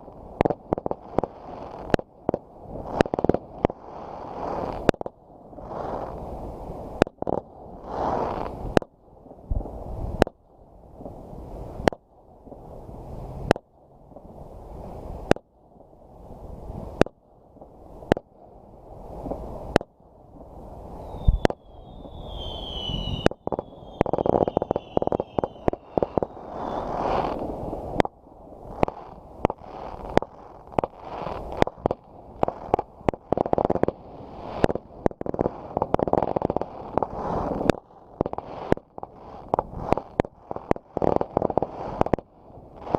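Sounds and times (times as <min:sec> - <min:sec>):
firework whistles falling in pitch: 0:21.0 - 0:27.8
fireworks banging: 0:21.1 - 0:28.1, 0:28.7 - 0:42.9.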